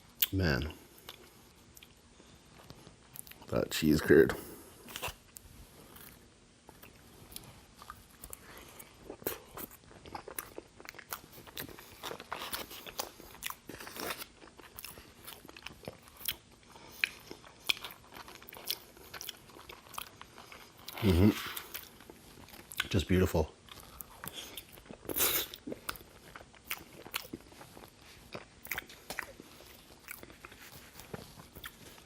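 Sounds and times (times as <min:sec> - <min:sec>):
wet chewing mouth sounds: 0:04.9 - 0:23.0, 0:23.6 - 0:32.0.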